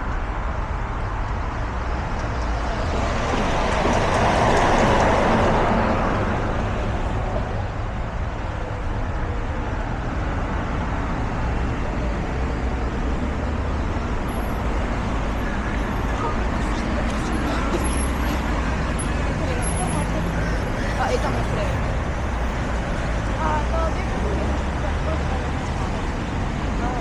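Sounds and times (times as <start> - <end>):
road traffic noise: 0.0 - 27.0.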